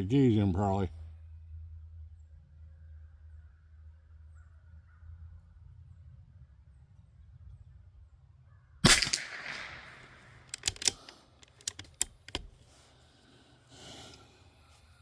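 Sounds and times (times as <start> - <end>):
rifle shot with echo: 8.8 - 11.1
rifle bolt metallic clicks: 8.9 - 12.8.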